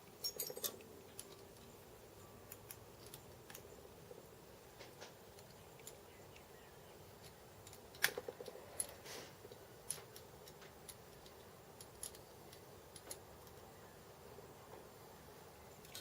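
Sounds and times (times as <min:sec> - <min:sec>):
small metal parts clicking: 0:00.0 - 0:03.8, 0:04.8 - 0:06.5, 0:07.2 - 0:13.7, 0:15.8 - 0:16.0.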